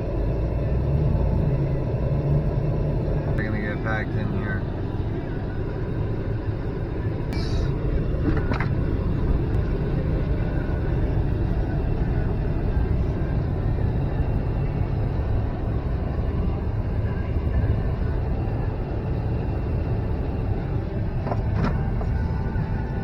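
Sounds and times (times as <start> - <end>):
truck driving rumble: 0.0 - 23.0
high squeak: 7.4 - 7.8.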